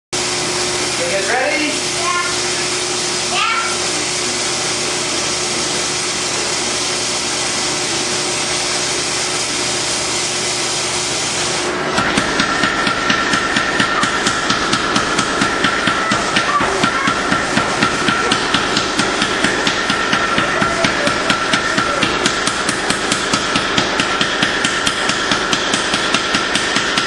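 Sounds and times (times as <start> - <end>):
forge hissing: 0.2 - 27.0
hammer blows on hot steel: 12.0 - 27.0.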